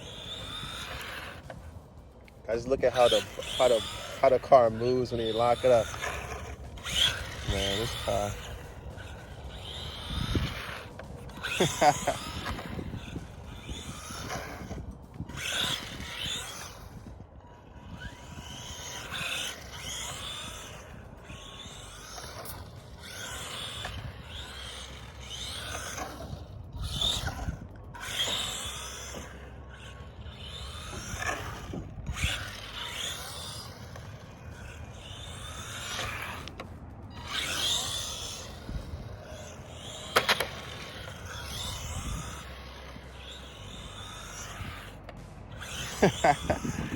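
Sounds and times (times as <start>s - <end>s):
electric toy car motor whining: 0.0s - 46.9s.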